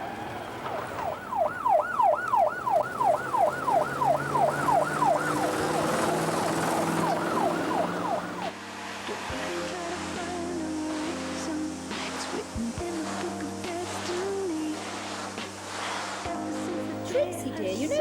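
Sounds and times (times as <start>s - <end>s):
police siren yelping: 0.0s - 8.6s.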